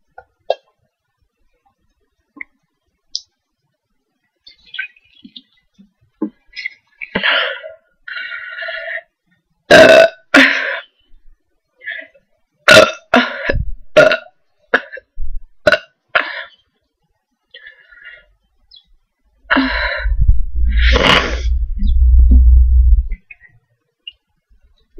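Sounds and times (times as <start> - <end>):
woman burping loudly: 9.7 - 10.6, 12.7 - 15.0, 15.6 - 16.0.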